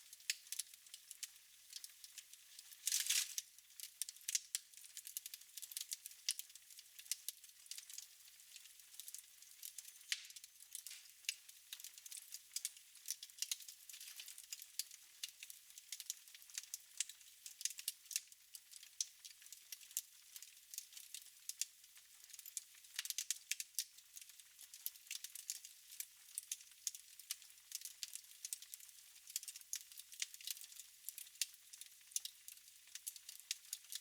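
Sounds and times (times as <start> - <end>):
faint fire hiss: 0.0 - 16.4
wood fire crackling: 0.0 - 21.7, 22.3 - 34.0.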